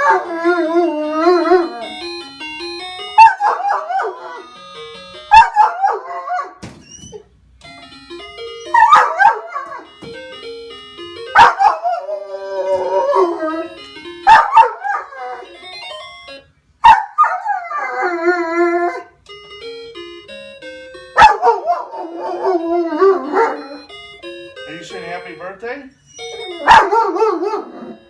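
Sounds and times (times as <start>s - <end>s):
dog barking and howling: 0.0s - 2.0s, 3.2s - 4.5s, 5.3s - 6.6s, 8.6s - 9.9s, 11.4s - 15.5s, 16.8s - 19.1s, 21.2s - 23.8s, 26.4s - 28.0s
tinkling melody: 0.0s - 28.0s.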